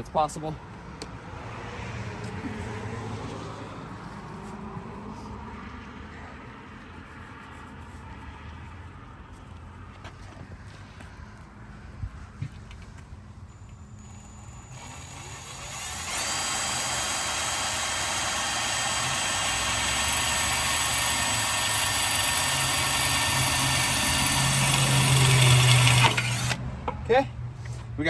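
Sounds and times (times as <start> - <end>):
drill boring into metal: 14.0 - 26.6.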